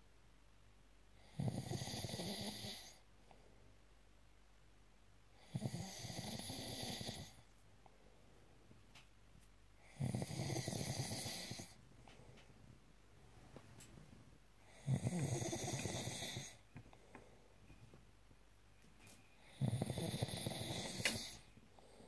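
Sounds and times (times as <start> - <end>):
person snoring: 1.2 - 3.0, 5.4 - 7.4, 9.8 - 11.8, 14.6 - 16.6, 19.5 - 22.0.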